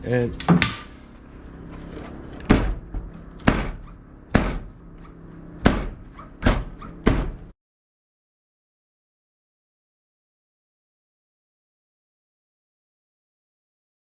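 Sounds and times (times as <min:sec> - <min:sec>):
car hatch slamming: 0:02.4 - 0:04.8, 0:05.6 - 0:07.5.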